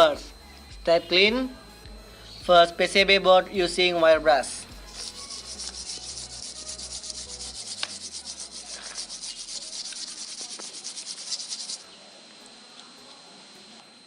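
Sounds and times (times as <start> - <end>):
wire brush scrubbing circuit board: 4.8 - 11.9.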